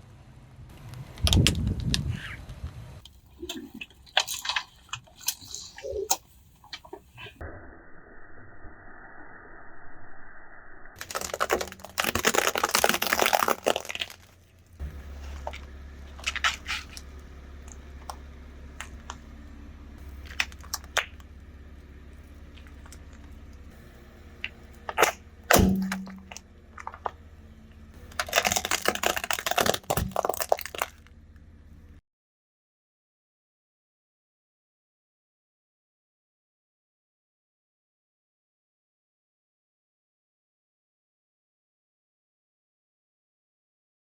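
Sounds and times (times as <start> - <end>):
low engine hum: 0.0 - 5.0, 10.5 - 32.0
loud crack: 11.0 - 18.2, 24.4 - 27.2, 28.1 - 31.0
tyre crushing crunchy objects: 11.0 - 19.3, 20.0 - 23.5, 24.4 - 27.2, 28.0 - 31.1.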